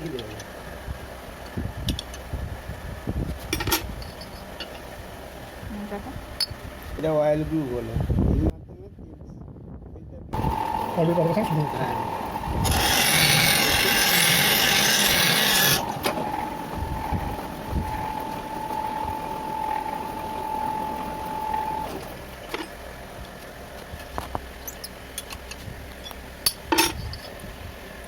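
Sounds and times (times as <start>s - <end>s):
lathe tool cutting metal: 10.4s - 22.1s
steady machine whine: 10.4s - 25.3s
machine running quietly: 10.4s - 26.5s.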